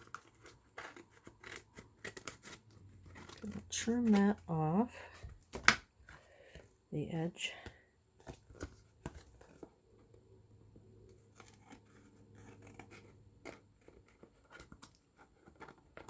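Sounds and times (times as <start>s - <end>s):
scissors snipping cardboard: 0.0s - 4.4s, 11.1s - 16.0s.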